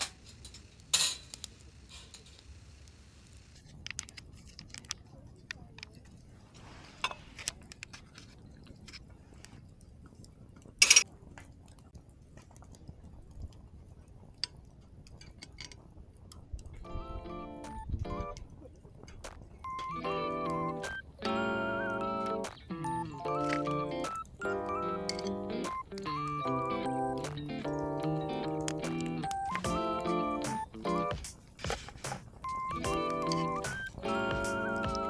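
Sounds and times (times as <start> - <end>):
camp cookware clinking: 10.8 - 11.0, 19.1 - 35.0.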